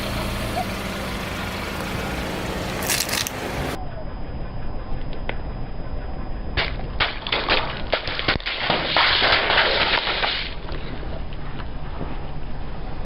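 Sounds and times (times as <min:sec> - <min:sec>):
low rumble: 0:00.0 - 0:13.0
objects cracking under car tyre: 0:02.8 - 0:03.4, 0:06.6 - 0:11.7.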